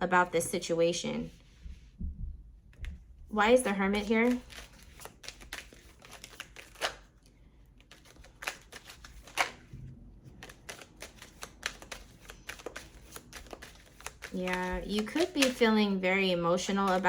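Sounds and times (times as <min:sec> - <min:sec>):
cards being shuffled: 0:03.6 - 0:07.1, 0:07.8 - 0:09.7, 0:10.3 - 0:17.0
cards snapping: 0:04.2 - 0:07.1, 0:07.8 - 0:09.6, 0:10.4 - 0:15.6.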